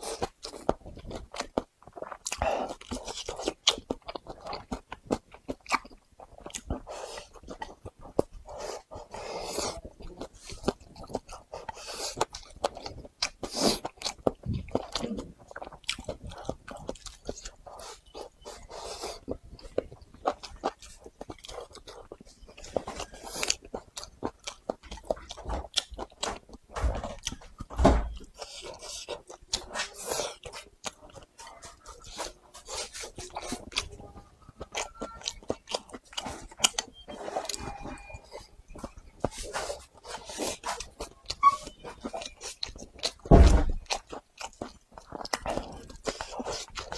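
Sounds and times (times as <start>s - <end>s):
chewing and mouth smacks: 0.0s - 46.9s
heavy thump: 27.8s - 28.2s, 43.3s - 43.8s.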